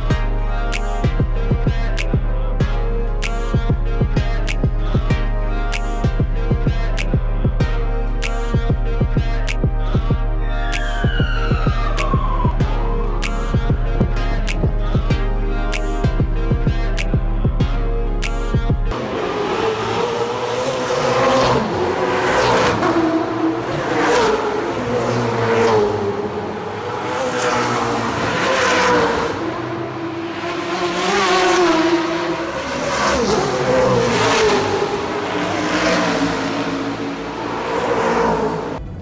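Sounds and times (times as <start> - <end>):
race cars passing at speed: 10.6 - 15.6, 18.9 - 39.0.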